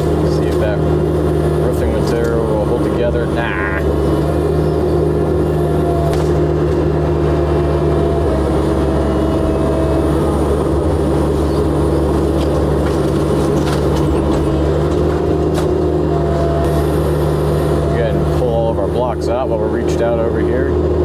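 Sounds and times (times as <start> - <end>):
excavator diesel engine running: 0.0 - 21.0
debris cracking: 10.2 - 16.1.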